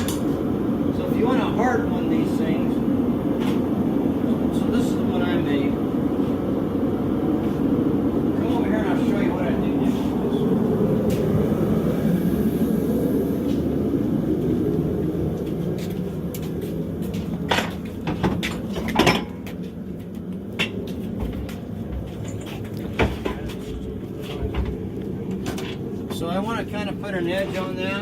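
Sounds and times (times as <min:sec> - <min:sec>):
low rumble: 0:00.0 - 0:28.0.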